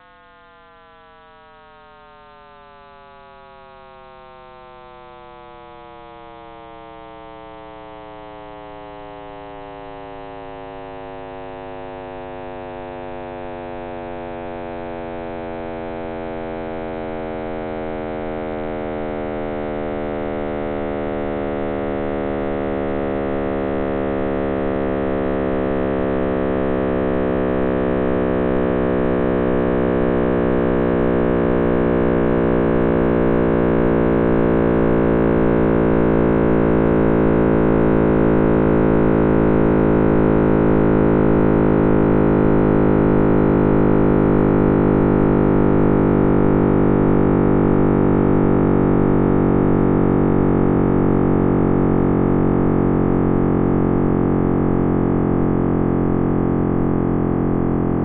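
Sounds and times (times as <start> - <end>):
deep many-toned hum: 14.6 - 58.0.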